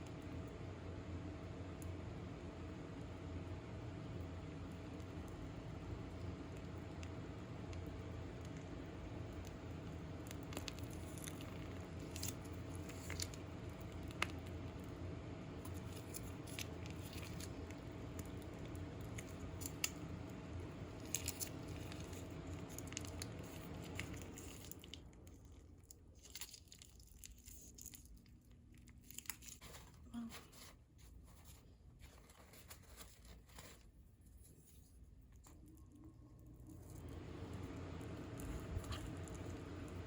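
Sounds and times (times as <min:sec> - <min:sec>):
steady hum with faint tone: 0:00.0 - 0:40.0
food being handled: 0:28.9 - 0:35.6.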